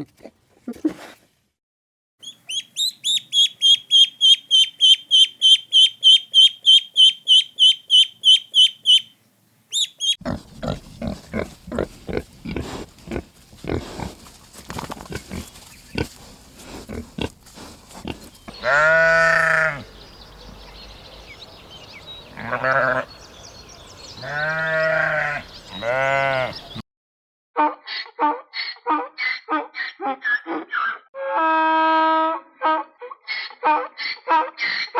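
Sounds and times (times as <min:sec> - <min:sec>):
drawn-out animal calls: 0:02.5 - 0:09.1
animal grunts: 0:10.2 - 0:14.3, 0:15.0 - 0:18.4.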